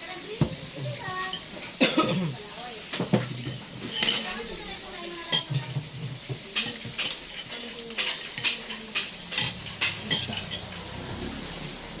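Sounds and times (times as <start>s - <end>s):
cutlery clinking against plates: 2.9s - 4.5s, 5.1s - 11.6s.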